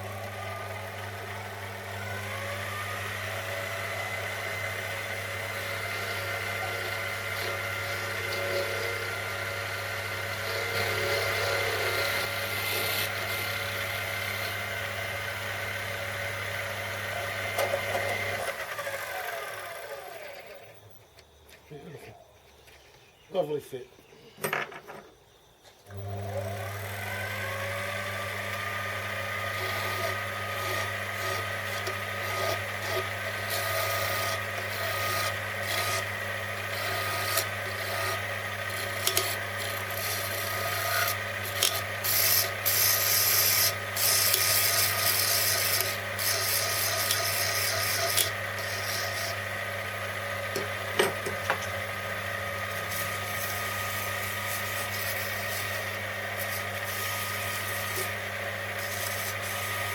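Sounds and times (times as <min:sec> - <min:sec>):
lathe motor humming: 0:00.0 - 0:20.7, 0:25.9 - 0:59.9.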